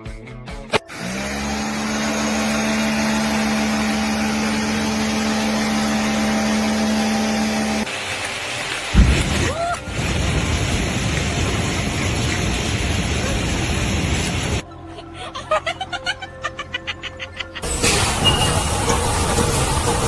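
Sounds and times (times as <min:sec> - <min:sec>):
machine humming: 0:00.8 - 0:09.3, 0:17.6 - 0:20.0
loud low thump: 0:09.0 - 0:09.5.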